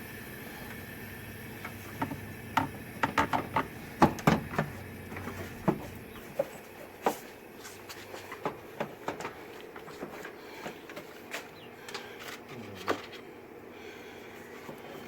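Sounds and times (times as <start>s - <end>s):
hand tools clicking and knocking: 1.6s - 5.8s.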